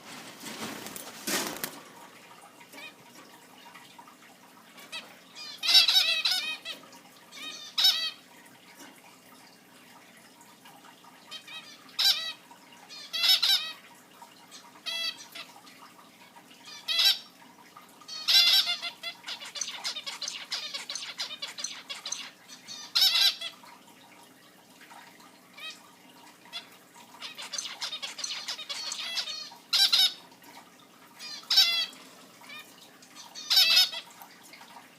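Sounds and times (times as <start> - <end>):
finches chirping: 18.1 - 23.4, 27.2 - 30.2.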